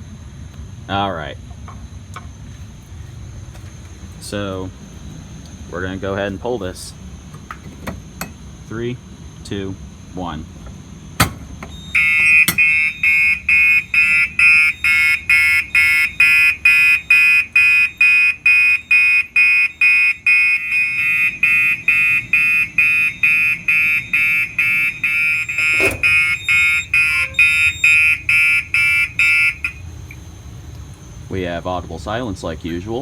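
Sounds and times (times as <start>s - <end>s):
pulsed fire alarm horn: 11.7s - 29.9s.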